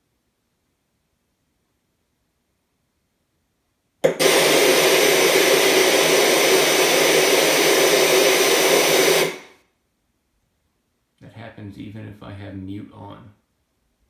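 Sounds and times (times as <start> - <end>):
tv screeching hiss with tones: 4.0 - 9.6.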